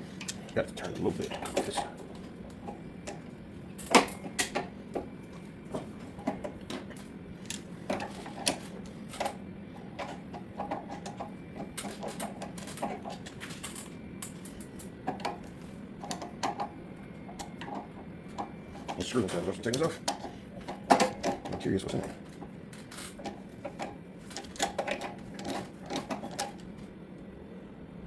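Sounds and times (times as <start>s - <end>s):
low steady hum: 0.0s - 28.0s
tools and metal parts clinking: 0.2s - 4.7s, 5.4s - 9.4s, 10.0s - 16.6s, 17.4s - 26.7s.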